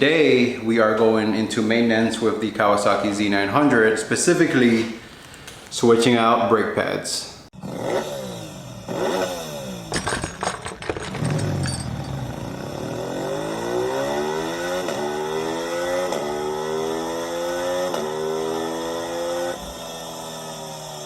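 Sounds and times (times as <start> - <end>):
motorcycle engine accelerating: 7.6 - 21.0
exhaust crackles: 10.9 - 18.2.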